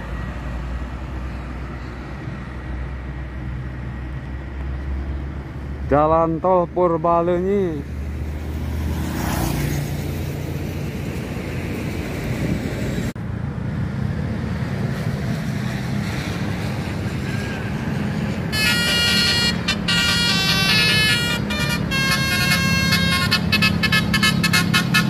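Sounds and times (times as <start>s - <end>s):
bus engines and road traffic: 0.0s - 25.0s
multi-tone bus horn: 18.5s - 25.0s.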